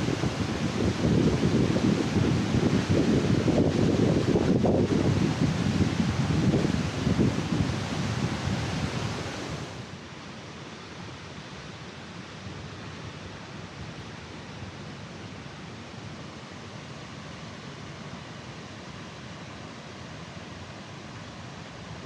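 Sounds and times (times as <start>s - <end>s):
large waterfall rushing: 0.0s - 22.0s.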